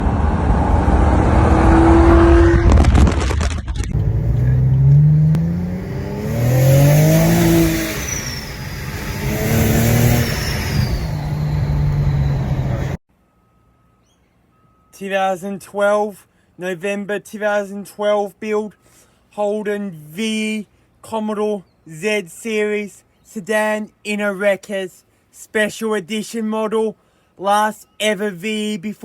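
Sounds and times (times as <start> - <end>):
car engine revving: 0.0 - 3.3, 3.9 - 13.0
high squeals: 4.4 - 13.0.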